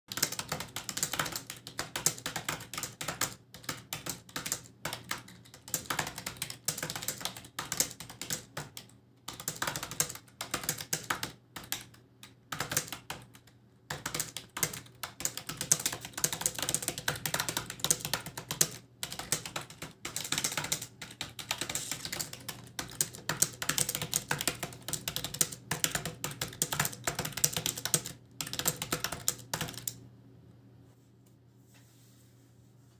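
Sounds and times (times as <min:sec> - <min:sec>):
fast typing on a keyboard: 0:00.1 - 0:30.0.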